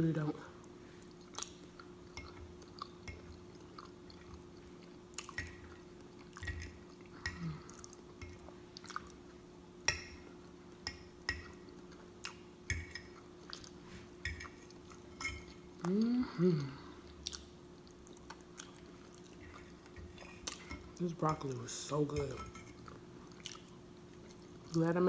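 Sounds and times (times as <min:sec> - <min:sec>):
faint steady hum: 0:00.0 - 0:25.0
person chewing with lip smacks: 0:01.0 - 0:06.4, 0:17.0 - 0:20.7, 0:23.3 - 0:24.8.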